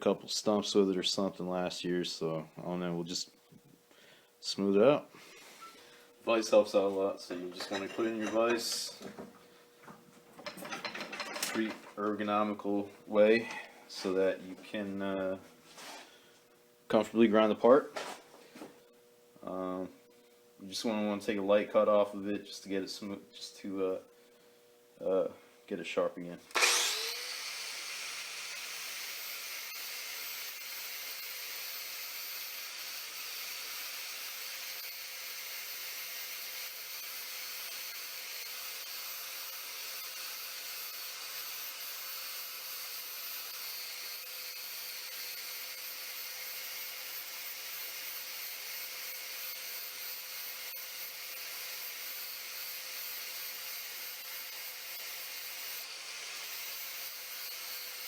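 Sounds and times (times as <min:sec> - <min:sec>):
angle grinder grinding metal: 0:06.5 - 0:09.1, 0:26.5 - 0:58.0.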